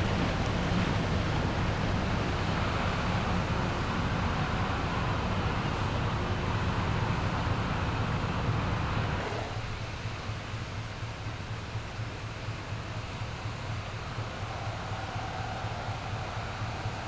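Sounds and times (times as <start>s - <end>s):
ship engine drone: 9.2s - 17.0s.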